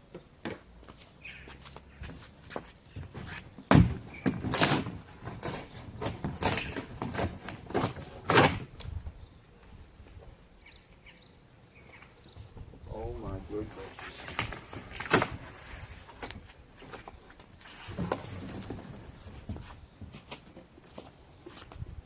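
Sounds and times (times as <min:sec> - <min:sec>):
cardboard scraping and rustling: 0:02.5 - 0:08.7, 0:13.7 - 0:20.5
knocks and thuds on cardboard box: 0:03.0 - 0:08.6.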